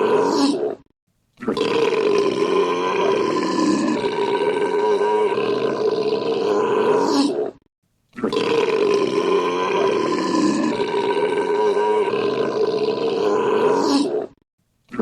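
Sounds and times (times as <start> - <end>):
man belching loudly: 1.4 - 7.1, 8.2 - 13.9.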